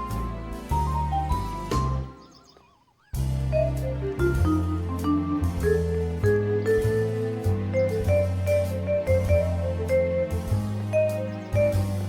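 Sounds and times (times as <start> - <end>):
sustained bass notes: 3.2 - 12.0
melody of short notes: 3.5 - 12.0.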